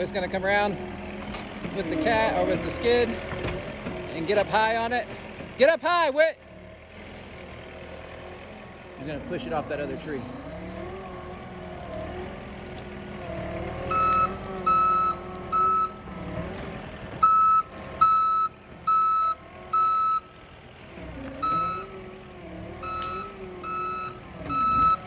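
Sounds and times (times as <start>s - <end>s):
diesel engine running: 0.0s - 25.0s
reverse alarm beeping: 13.9s - 16.0s, 17.2s - 20.3s, 22.8s - 25.0s.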